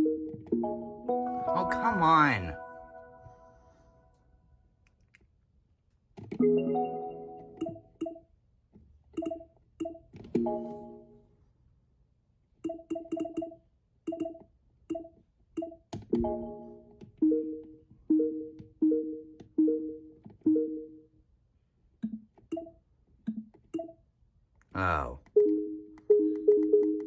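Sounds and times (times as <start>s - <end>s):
alarm clock electronic tones: 6.6s - 8.3s, 9.2s - 10.1s, 12.6s - 15.9s, 22.0s - 24.0s
pitched blips with clicks: 7.6s - 8.3s, 9.2s - 10.1s, 12.6s - 15.9s, 22.0s - 24.0s, 25.3s - 27.0s.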